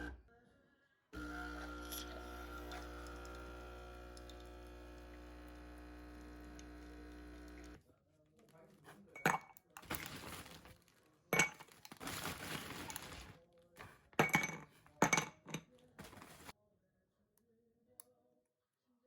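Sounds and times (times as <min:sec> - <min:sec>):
glassware and dishes clinking: 0:09.2 - 0:10.4, 0:11.3 - 0:12.3, 0:14.2 - 0:16.3
shuffling: 0:16.0 - 0:16.6.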